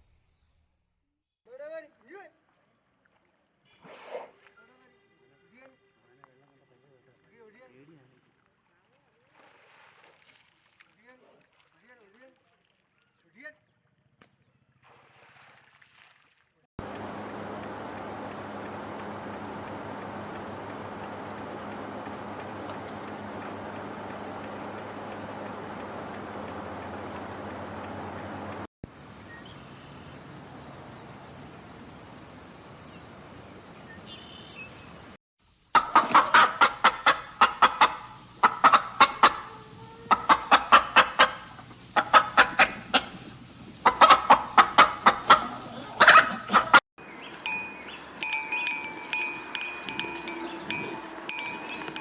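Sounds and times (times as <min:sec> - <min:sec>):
steady rushing noise: 0:16.8 - 0:28.7
chicken clucking: 0:35.8 - 0:46.8.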